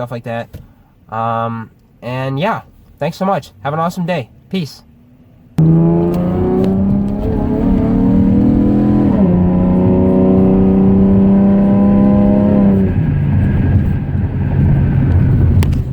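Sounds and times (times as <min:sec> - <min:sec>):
car engine accelerating: 0:05.6 - 0:15.9.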